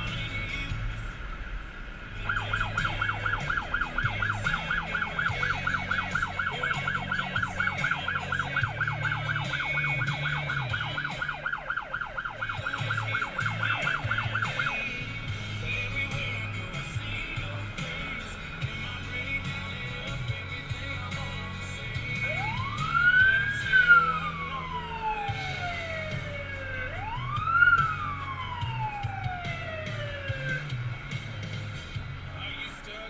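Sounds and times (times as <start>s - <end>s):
electronic siren yelping: 2.2s - 15.1s, 22.2s - 30.8s.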